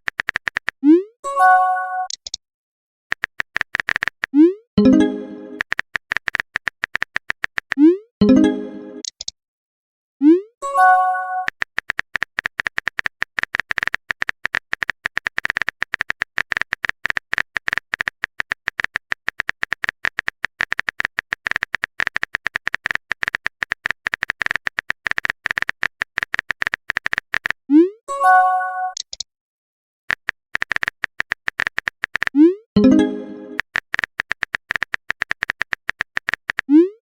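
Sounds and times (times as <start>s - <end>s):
phone keyboard typing clicks: 0.0s - 0.9s, 3.1s - 7.9s, 11.4s - 27.6s, 28.9s - 29.2s, 30.1s - 36.7s
chime-like message tone: 32.8s - 33.6s.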